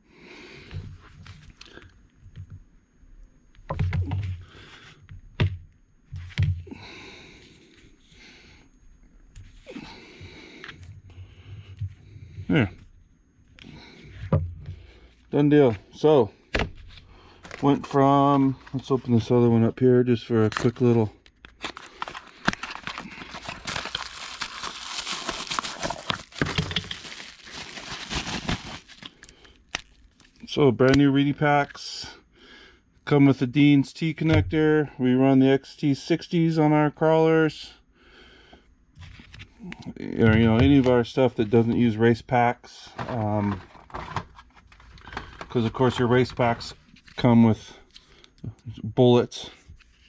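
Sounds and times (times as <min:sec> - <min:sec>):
packaging crinkling: 0:20.4 - 0:30.4
rustling: 0:21.6 - 0:30.4.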